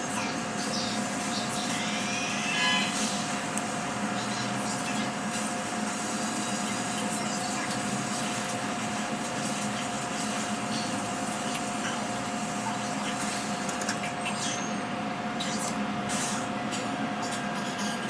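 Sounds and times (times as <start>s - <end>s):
small fan whirring: 0.0s - 18.0s.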